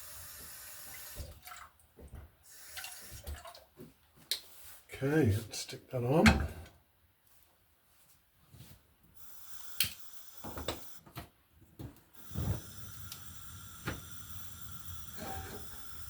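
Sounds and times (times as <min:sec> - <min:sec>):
faint steady hiss: 0:02.4 - 0:11.0, 0:12.0 - 0:16.0.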